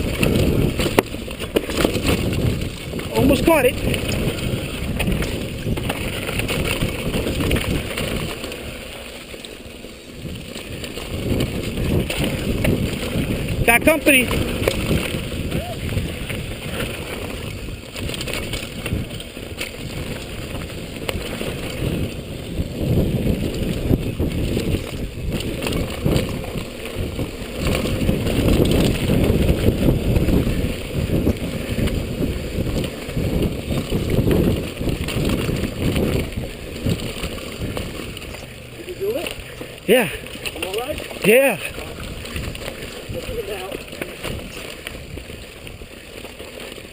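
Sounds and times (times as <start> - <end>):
wind on microphone: 0.0 - 9.1, 10.1 - 46.9
bike rattling and knocking: 0.0 - 46.9
bike tyres rumbling on dirt: 0.0 - 46.9.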